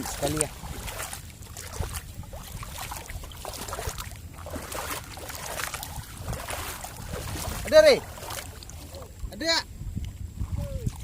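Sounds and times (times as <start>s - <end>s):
feet sloshing through water and mud: 0.0s - 9.4s, 10.0s - 11.0s
wind rumble on microphone: 0.0s - 11.0s.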